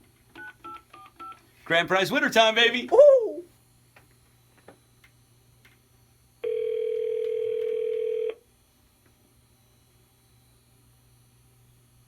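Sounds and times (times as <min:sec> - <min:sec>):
telephone ringback tone: 0:06.4 - 0:08.4.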